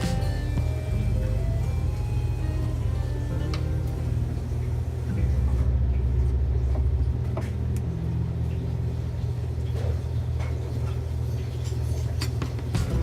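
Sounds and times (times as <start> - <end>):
music with deep bass notes: 0.0 - 9.8, 12.7 - 13.0.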